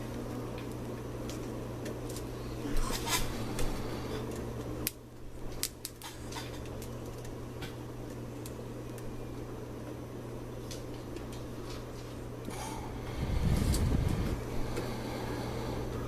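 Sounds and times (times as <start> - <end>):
wires clicking and rubbing metal: 0.0 - 10.0
steady low hum: 0.0 - 16.0.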